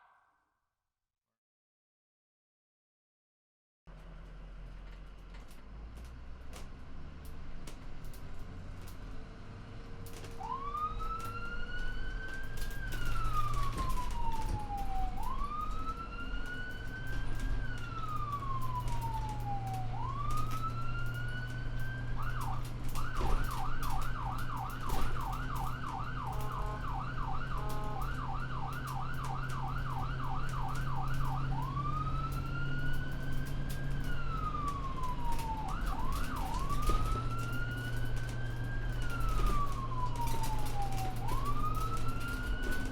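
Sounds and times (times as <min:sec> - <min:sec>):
vehicle engine hum: 0:03.9 - 0:42.9
emergency siren wailing and yelping: 0:10.2 - 0:42.9.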